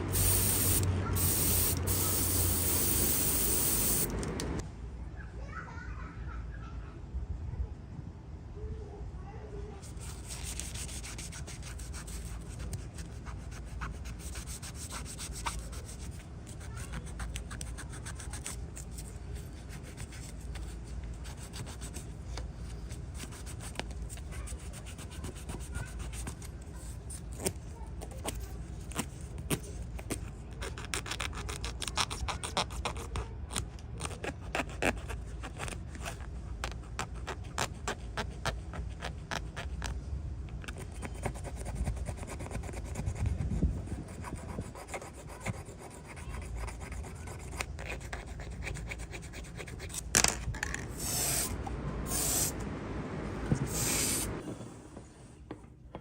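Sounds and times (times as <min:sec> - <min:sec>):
steady low hum: 0:00.0 - 0:05.0, 0:48.5 - 0:55.4.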